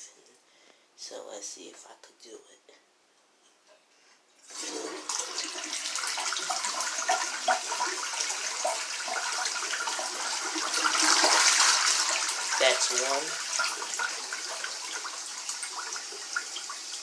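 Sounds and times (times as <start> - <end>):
toilet flushing: 4.4 - 17.0.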